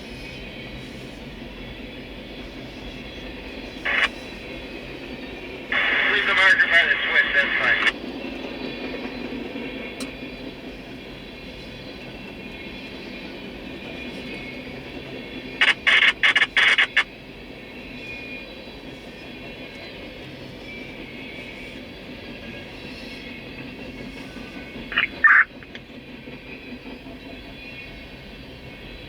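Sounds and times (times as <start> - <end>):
freight train rumbling on rails: 0.0 - 29.0.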